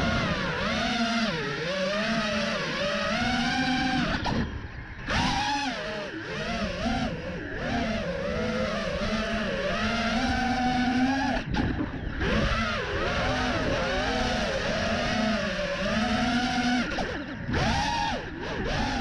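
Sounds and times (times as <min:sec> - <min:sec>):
drone motors whining: 0:00.0 - 0:19.0.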